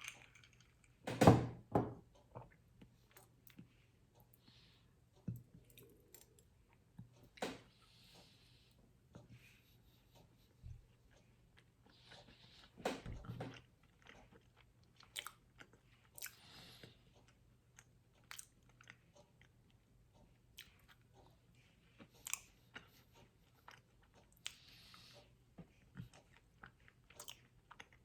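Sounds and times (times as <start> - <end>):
person chewing and biting: 13.5 - 16.4, 17.8 - 19.5, 22.0 - 24.7.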